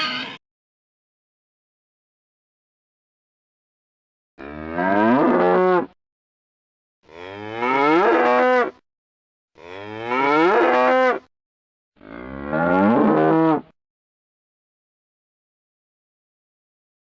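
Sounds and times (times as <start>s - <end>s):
cow mooing: 4.4s - 5.9s, 7.1s - 8.8s, 9.6s - 11.3s, 12.0s - 13.7s.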